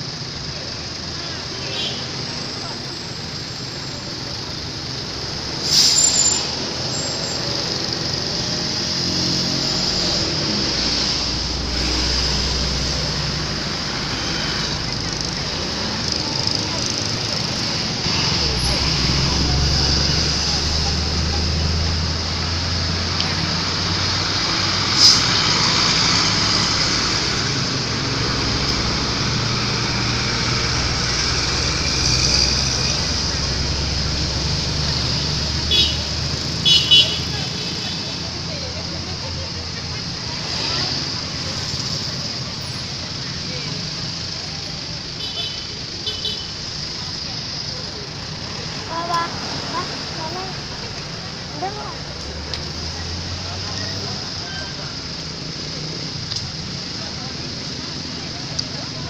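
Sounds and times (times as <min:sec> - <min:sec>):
heavy vehicle engine rumble: 0:00.0 - 0:59.0
roadside traffic noise: 0:00.0 - 0:59.0
loud hiss: 0:04.8 - 0:14.9.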